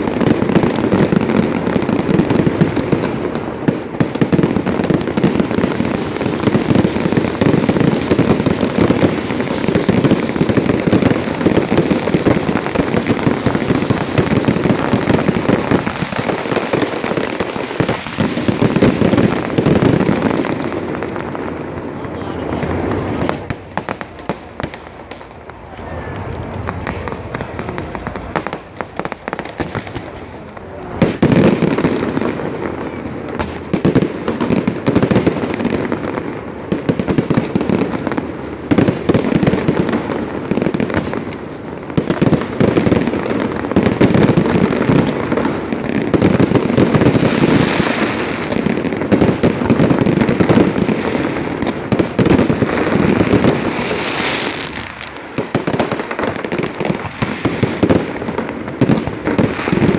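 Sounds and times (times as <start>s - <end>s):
fireworks bangs and crackling: 0.0s - 59.9s.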